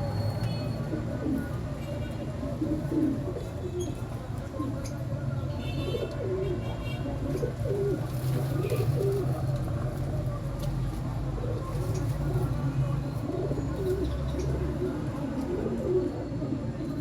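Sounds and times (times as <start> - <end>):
pigeons cooing: 2.4 - 4.1, 7.2 - 9.5, 11.4 - 17.0.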